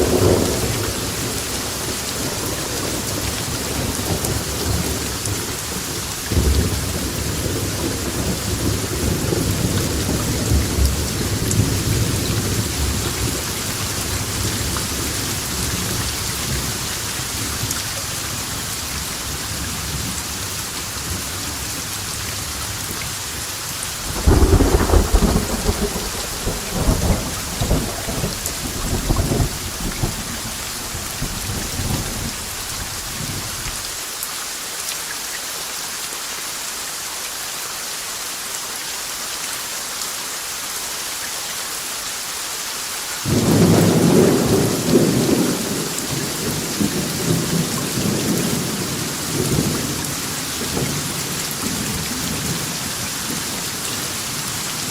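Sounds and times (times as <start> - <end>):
heavy rain: 0.0 - 54.9
rolling thunder: 24.0 - 33.7, 43.3 - 52.7.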